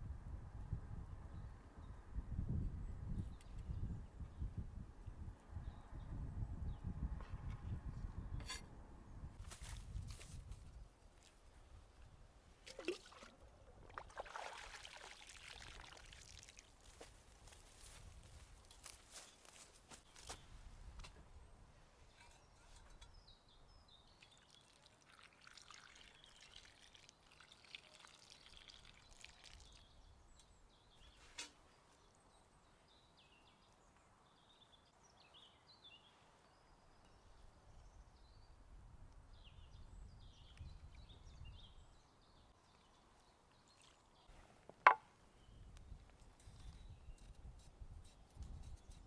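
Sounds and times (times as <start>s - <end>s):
faint liquid trickling: 12.6s - 17.2s, 24.0s - 30.2s.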